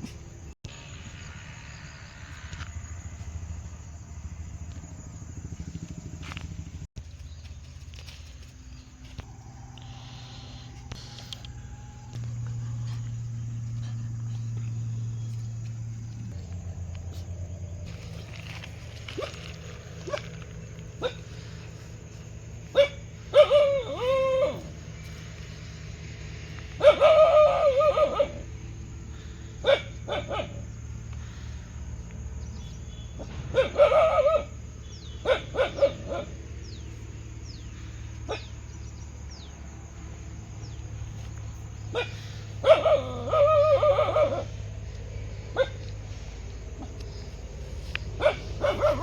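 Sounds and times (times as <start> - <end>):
steady low hum: 0.0 - 49.0
dog barking: 21.0 - 21.3, 22.7 - 24.7, 26.8 - 28.5, 29.6 - 30.7, 33.2 - 34.6, 35.2 - 36.4, 38.3 - 38.6, 41.9 - 44.6, 45.5 - 45.8, 48.2 - 49.0.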